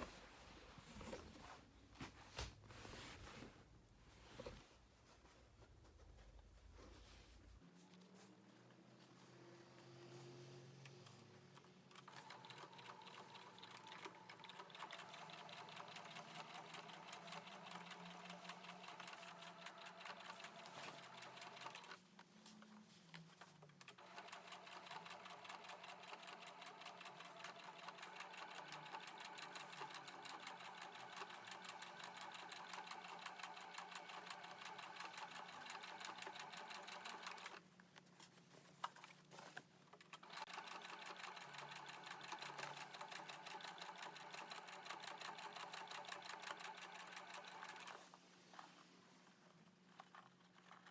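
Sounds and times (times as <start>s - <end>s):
sewing machine stitching: 11.0s - 22.0s, 23.8s - 37.6s, 40.0s - 48.2s.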